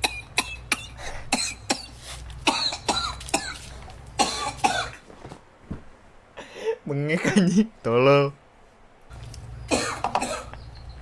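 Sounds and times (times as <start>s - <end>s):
person coughing: 0.0s - 5.0s, 9.7s - 10.5s.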